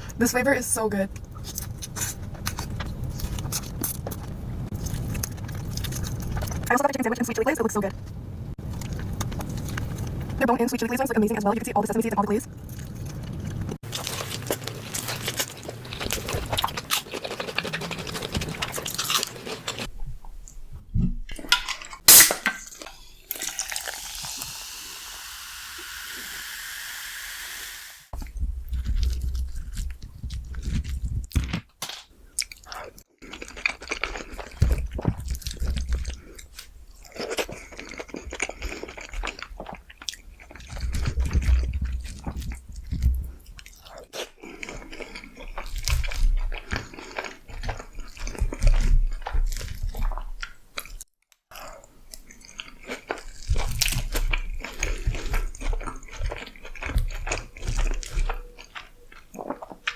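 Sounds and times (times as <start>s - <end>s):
crunching and chewing: 1.3s - 6.7s, 8.6s - 10.4s, 12.6s - 20.6s, 28.2s - 59.9s
steady hiss: 22.1s - 28.1s.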